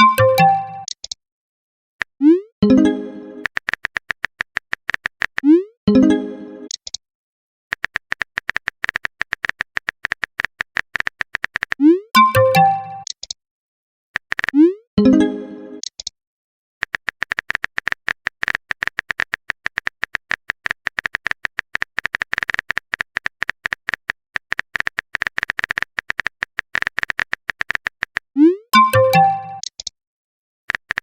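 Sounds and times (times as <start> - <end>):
chiming notes: 0.0 - 0.9, 12.2 - 13.0, 28.8 - 29.6
phone keyboard typing clicks: 0.0 - 1.2, 3.4 - 5.5, 7.7 - 13.4, 16.8 - 29.9, 30.7 - 31.0.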